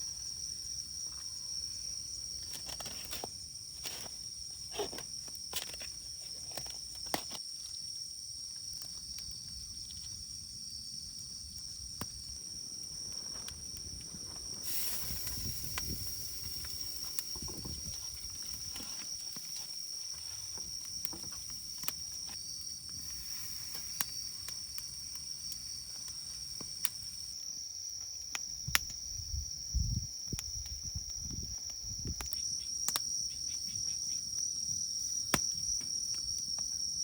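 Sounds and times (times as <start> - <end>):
campfire crackling: 0.0 - 29.1, 34.0 - 37.0
insects trilling: 0.0 - 37.0
steady high hiss: 12.2 - 27.4.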